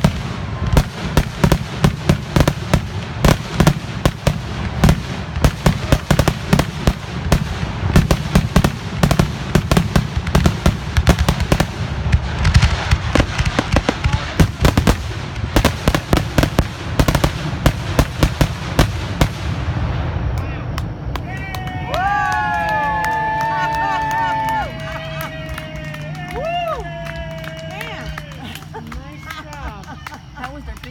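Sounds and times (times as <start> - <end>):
fireworks shells bursting: 0.0 - 19.6.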